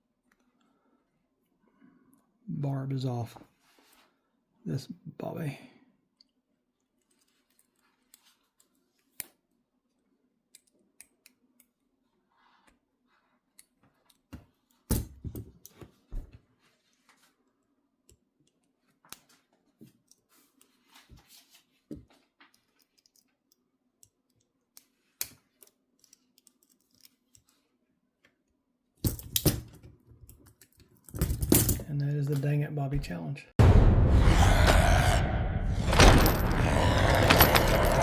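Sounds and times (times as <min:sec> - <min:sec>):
loud knock: 0:33.6 - 0:38.0.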